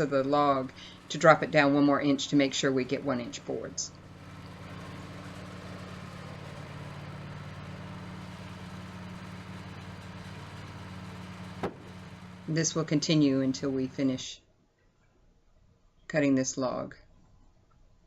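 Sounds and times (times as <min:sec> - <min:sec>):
sawmill engine humming: 0:00.0 - 0:14.2.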